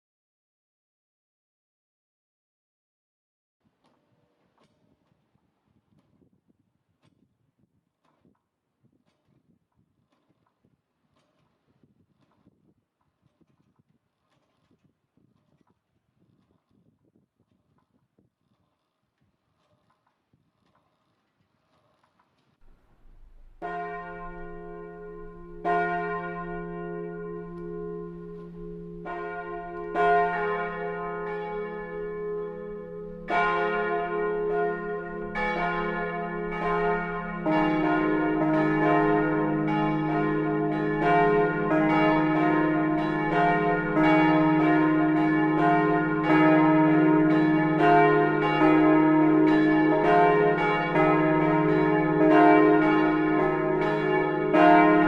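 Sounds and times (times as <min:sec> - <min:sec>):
church bells ringing: 0:23.0 - 0:55.0
lower bell ringing: 0:23.1 - 0:55.0.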